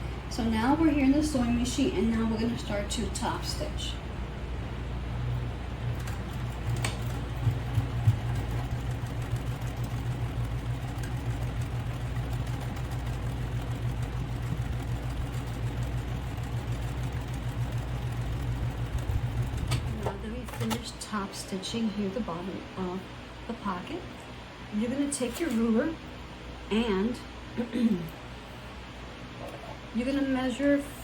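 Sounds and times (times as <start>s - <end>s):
sewing machine running: 5.3s - 20.8s.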